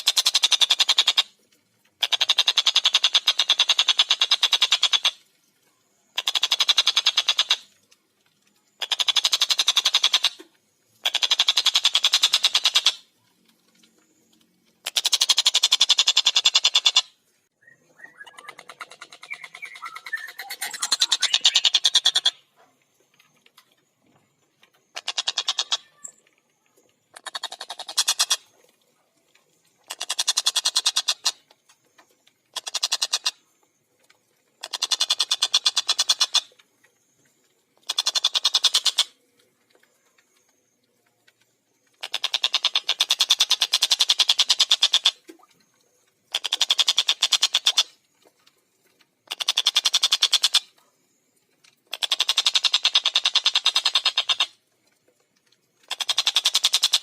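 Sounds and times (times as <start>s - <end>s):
kingfisher chattering calls: 17.9s - 22.4s, 25.0s - 26.1s.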